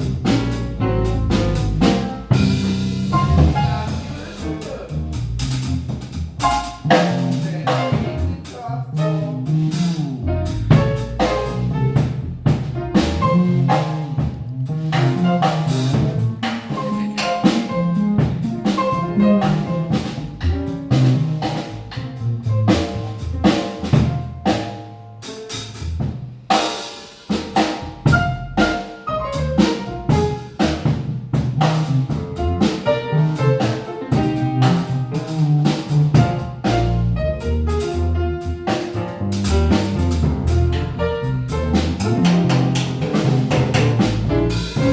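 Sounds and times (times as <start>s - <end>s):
busy drumming: 0.0s - 44.9s
double bass line: 0.0s - 44.9s
piano: 0.0s - 44.9s.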